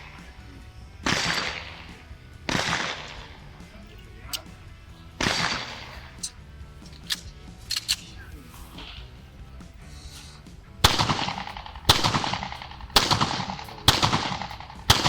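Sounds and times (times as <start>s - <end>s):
pistol shots with echo: 1.0s - 3.7s, 5.2s - 6.2s, 10.8s - 15.0s.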